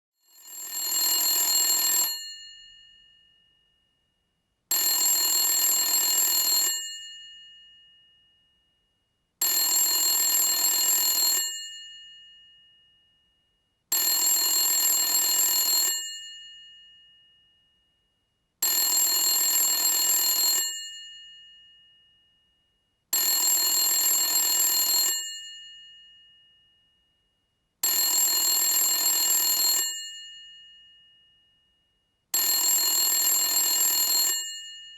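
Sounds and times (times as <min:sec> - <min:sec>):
telephone bell ringing: 0:00.2 - 0:03.4, 0:04.7 - 0:08.2, 0:09.4 - 0:12.9, 0:13.9 - 0:17.3, 0:18.6 - 0:22.2, 0:23.2 - 0:26.6, 0:27.8 - 0:31.4, 0:32.4 - 0:34.9.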